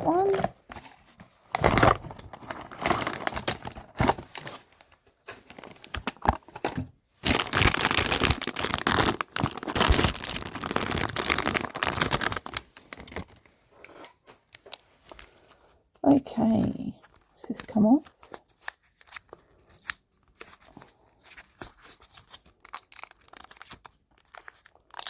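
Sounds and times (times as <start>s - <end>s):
packaging torn and crinkled: 1.6s - 4.6s, 5.4s - 6.4s, 7.2s - 13.4s, 18.6s - 25.0s.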